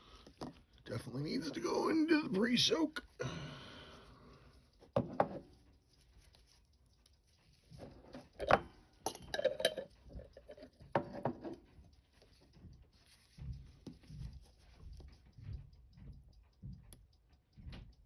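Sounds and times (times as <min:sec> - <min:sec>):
small tools clinking on glass and metal: 0:08.3 - 0:10.8.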